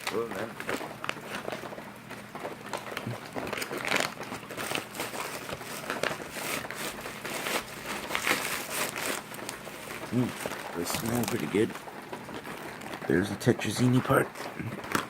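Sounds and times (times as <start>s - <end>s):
plastic packaging crinkling: 0.0s - 15.0s.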